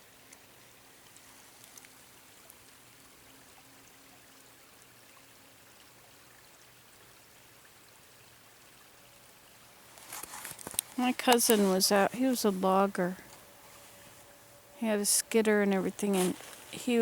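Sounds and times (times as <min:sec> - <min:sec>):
faint outdoor hiss: 0:00.0 - 0:17.0
faint ticks: 0:00.2 - 0:02.9, 0:09.9 - 0:11.7.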